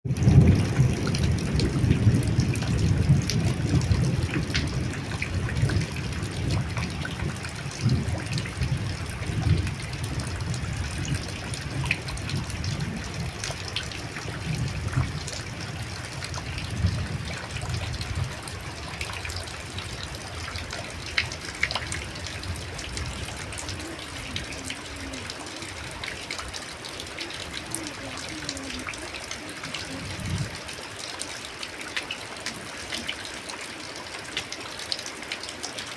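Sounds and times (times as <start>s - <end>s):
light rain falling: 0.0s - 35.9s
raindrops ticking: 0.0s - 35.9s.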